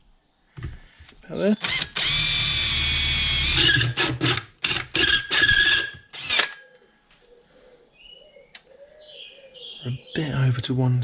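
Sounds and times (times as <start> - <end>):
power drill with hole saw cutting metal: 1.6 - 6.6
saw squealing in metal: 5.0 - 6.6.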